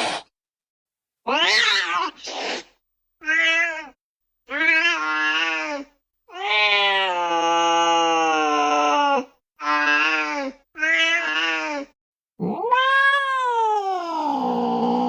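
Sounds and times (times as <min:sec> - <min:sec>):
cat meowing: 0:01.3 - 0:02.2, 0:03.2 - 0:07.4, 0:09.6 - 0:13.9.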